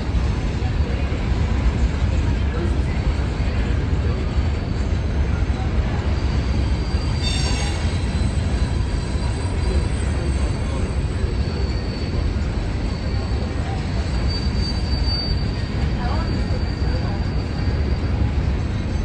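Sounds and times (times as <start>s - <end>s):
train wheels rumbling on rail: 0.0s - 19.0s
high wheel squeal: 4.4s - 19.0s.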